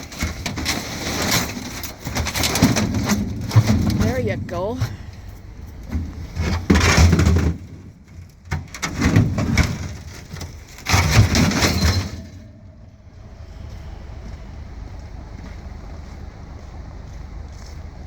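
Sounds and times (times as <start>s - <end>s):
scrap metal rattling and scraping: 0.0s - 14.2s.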